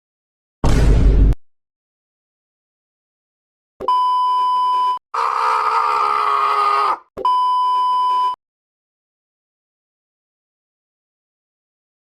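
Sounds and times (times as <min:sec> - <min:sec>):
electronic beep tone: 0:07.2 - 0:08.4.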